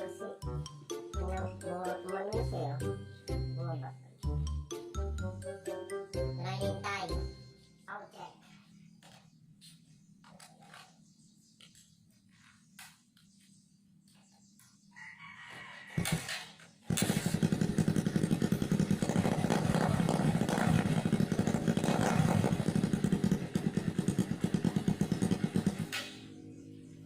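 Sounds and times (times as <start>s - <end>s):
motorcycle engine pulsing exhaust: 16.8s - 27.0s.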